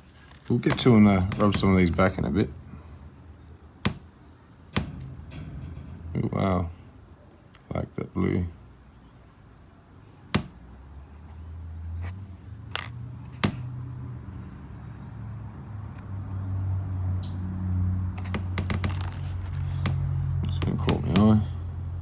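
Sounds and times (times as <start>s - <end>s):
low hum: 4.8s - 8.0s
stones clicking: 12.7s - 12.9s.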